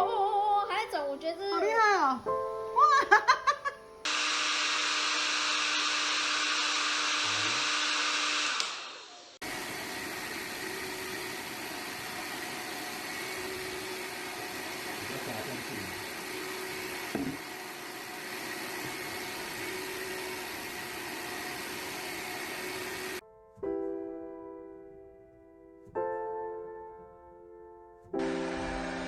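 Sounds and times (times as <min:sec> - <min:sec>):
electric blower running: 0:04.1 - 0:23.2, 0:28.2 - 0:29.0.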